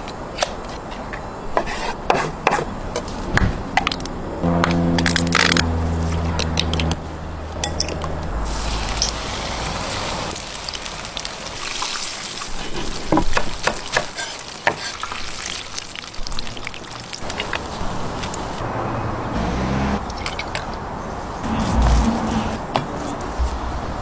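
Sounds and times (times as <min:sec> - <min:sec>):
low hum stepping in pitch: 0:04.3 - 0:09.0
chicken sizzling in hot oil: 0:08.4 - 0:18.6.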